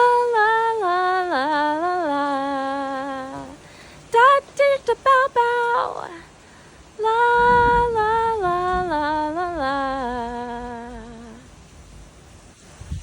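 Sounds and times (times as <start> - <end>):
woman humming: 7.0 - 11.5.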